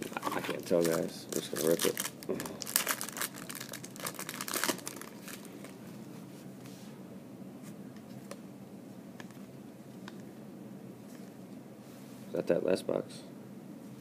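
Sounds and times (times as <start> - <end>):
wrapper crinkling and tearing: 0.0 - 5.8.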